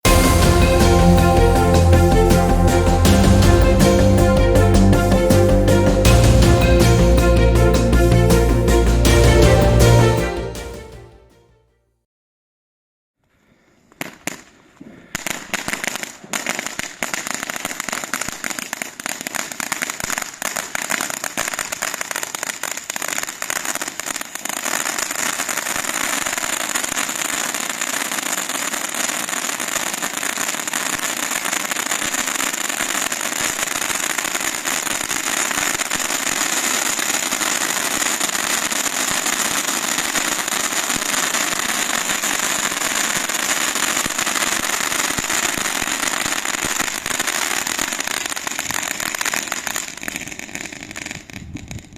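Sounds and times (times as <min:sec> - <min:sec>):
firework popping and crackling: 0:13.9 - 0:51.9.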